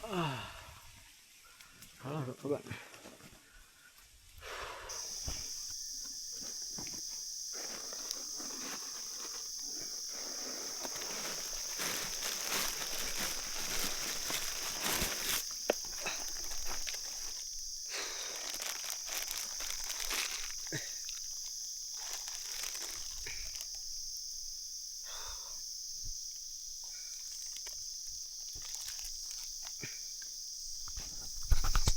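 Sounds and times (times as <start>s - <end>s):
footsteps crunching dry leaves: 4.9s - 23.6s.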